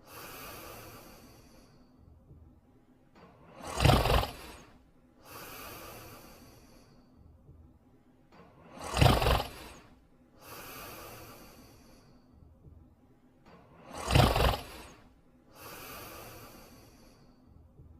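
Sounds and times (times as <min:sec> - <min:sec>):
cartoon dog snoring: 0:03.4 - 0:06.4, 0:08.6 - 0:11.7, 0:13.8 - 0:17.1.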